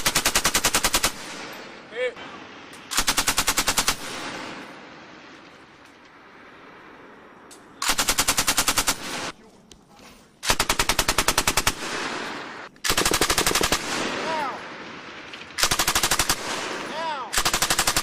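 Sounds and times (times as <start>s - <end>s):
machine gun bursts: 12.9s - 13.9s, 15.6s - 16.6s, 17.3s - 18.0s
gunshot echoes: 13.7s - 15.0s.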